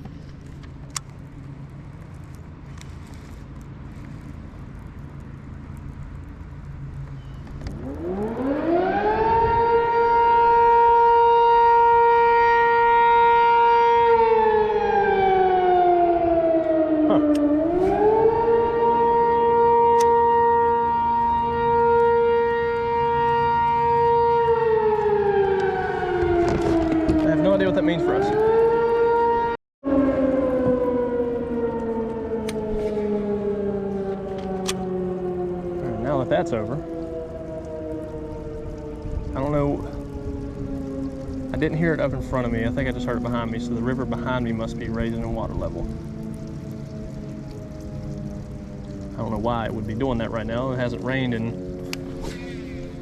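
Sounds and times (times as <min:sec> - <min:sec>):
warning siren wailing: 0:00.0 - 0:53.0.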